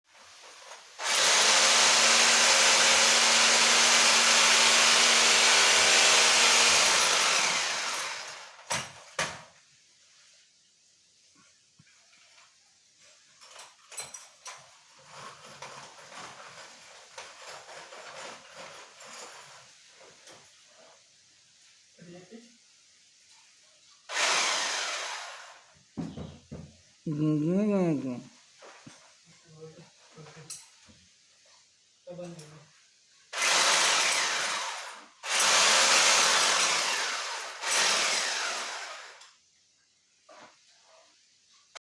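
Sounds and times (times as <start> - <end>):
electric drill running: 1.0 - 8.8, 24.1 - 25.7, 33.4 - 39.3
scraping and rustling: 11.9 - 21.1
faint knock: 26.0 - 26.8.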